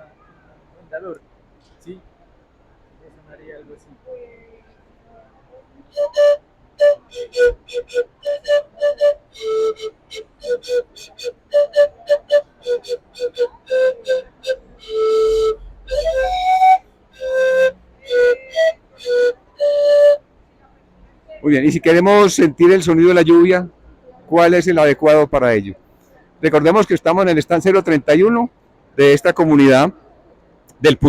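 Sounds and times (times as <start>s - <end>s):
panpipe tune: 6.0s - 20.2s.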